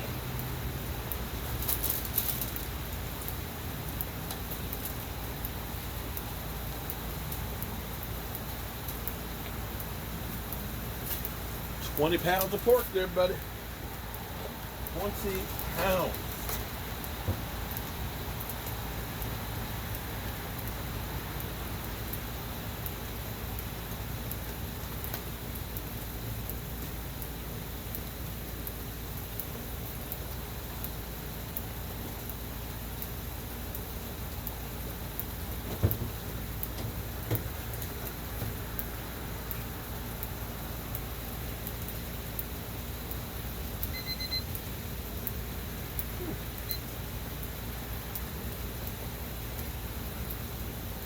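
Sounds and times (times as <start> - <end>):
steady rain: 0.0 - 51.0
electronic device high beeps: 43.9 - 44.5.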